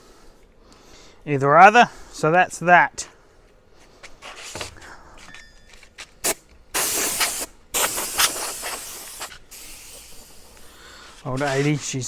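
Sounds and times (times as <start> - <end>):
aerosol can spraying: 6.2 - 11.9.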